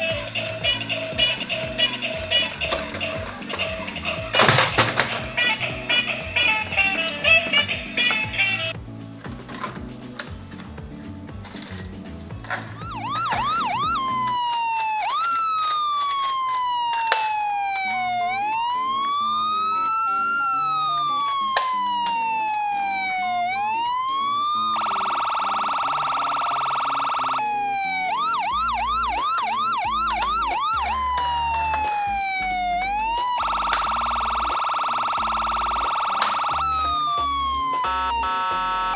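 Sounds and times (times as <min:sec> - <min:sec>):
toy electronic siren: 0:00.0 - 0:08.8, 0:12.6 - 0:38.9
sharp clicks: 0:11.5 - 0:38.9.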